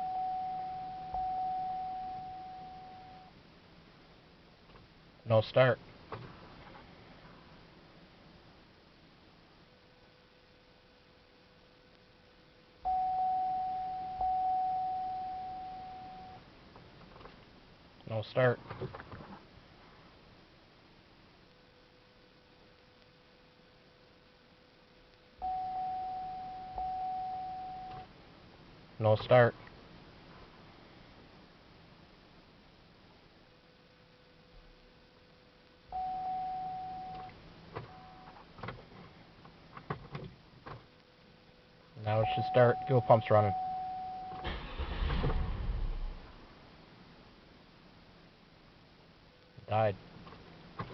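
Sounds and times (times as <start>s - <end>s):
steady electrical tone: 0.0s - 5.4s, 6.9s - 16.7s, 19.7s - 29.0s, 29.9s - 38.4s.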